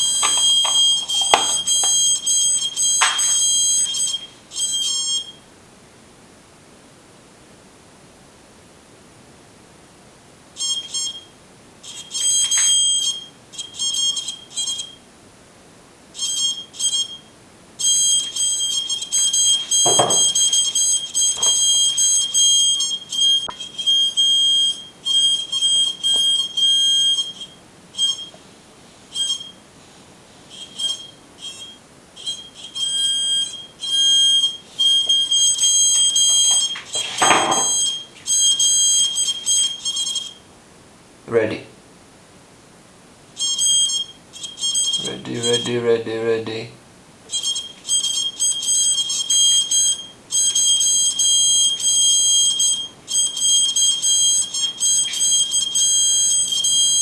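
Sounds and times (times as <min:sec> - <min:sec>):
buzzy electronic alarm tone: 0:00.0 - 0:05.2, 0:17.8 - 0:28.2, 0:32.3 - 0:40.2, 0:43.4 - 0:46.5, 0:47.4 - 0:57.0.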